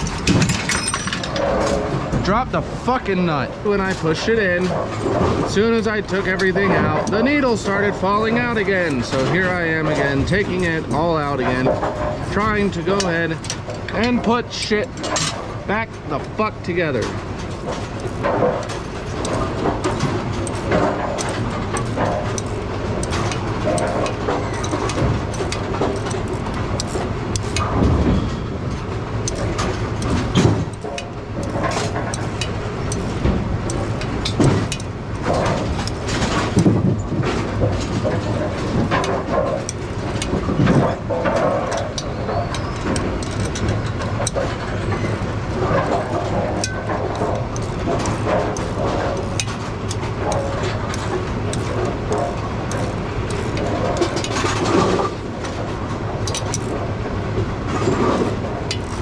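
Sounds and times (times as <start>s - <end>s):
machinery hum: 0.0s - 59.0s
metal clanks and knocks: 0.0s - 59.0s.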